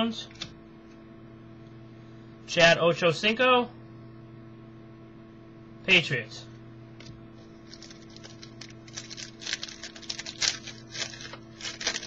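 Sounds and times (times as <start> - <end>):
foil wrapper crinkling: 7.6 - 12.0.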